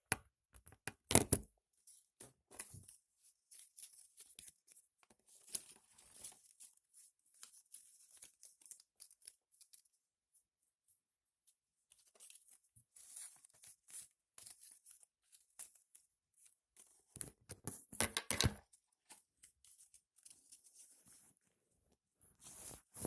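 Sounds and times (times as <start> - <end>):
paper rustling and crinkling: 1.9 - 10.0, 11.9 - 21.4, 22.3 - 23.0.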